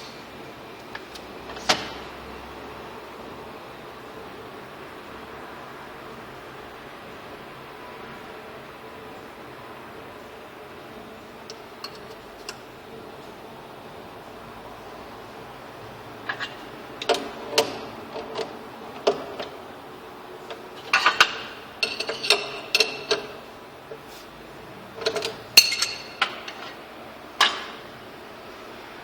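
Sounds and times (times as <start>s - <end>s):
metal parts clicking and clinking: 20.5s - 23.4s, 25.0s - 26.8s.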